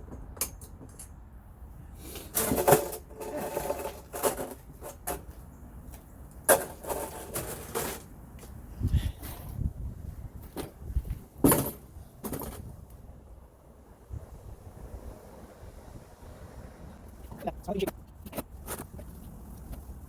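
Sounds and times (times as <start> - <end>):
small metal hardware clinking: 0.3 - 1.2.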